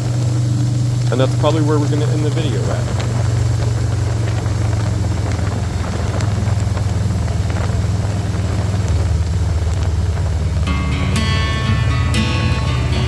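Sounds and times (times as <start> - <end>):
motorcycle engine running: 0.0 - 13.0
wind noise: 0.0 - 13.0.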